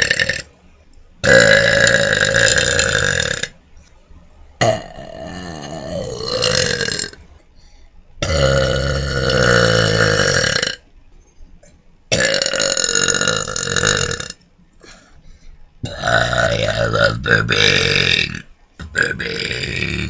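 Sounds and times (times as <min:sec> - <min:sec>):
person burping: 0:00.0 - 0:00.5, 0:01.2 - 0:03.6, 0:04.6 - 0:07.2, 0:08.2 - 0:10.8, 0:12.1 - 0:15.0, 0:15.8 - 0:20.0.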